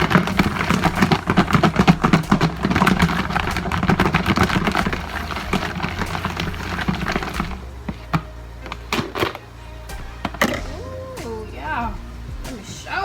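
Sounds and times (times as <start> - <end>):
chicken wings rattling in container: 0.0 - 7.6.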